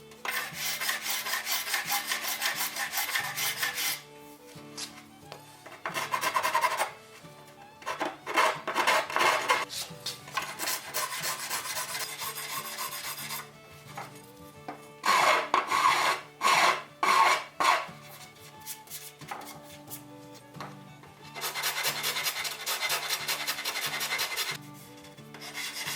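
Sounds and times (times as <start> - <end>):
soft background music: 0.0 - 25.9
hand rasp filing wood: 0.2 - 4.0, 5.7 - 7.0, 7.8 - 14.1, 15.0 - 20.0, 21.3 - 25.9.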